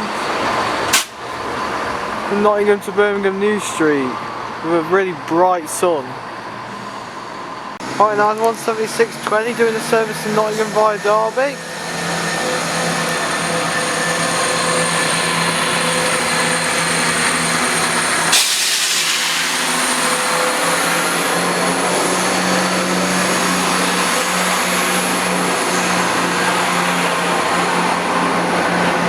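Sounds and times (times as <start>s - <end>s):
diesel train engine hum: 0.0s - 29.0s
loud air hiss: 0.9s - 1.3s, 18.0s - 26.6s.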